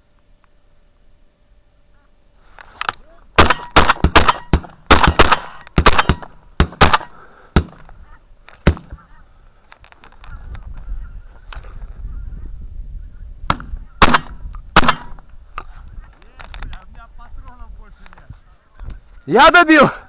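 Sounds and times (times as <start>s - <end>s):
shotgun shots: 3.4s - 7.8s, 8.6s - 9.0s, 13.5s - 15.2s.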